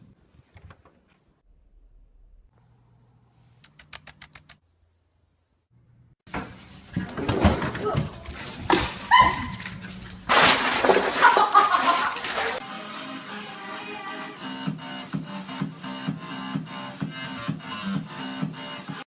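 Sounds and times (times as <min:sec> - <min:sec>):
quick clicks: 0:03.6 - 0:04.6
dog barking and yelping: 0:08.5 - 0:10.3.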